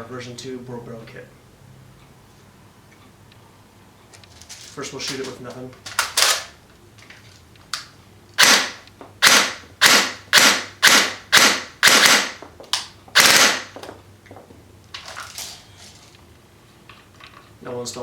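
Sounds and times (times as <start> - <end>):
airsoft rifle firing shots: 8.4 - 12.4, 13.2 - 13.8.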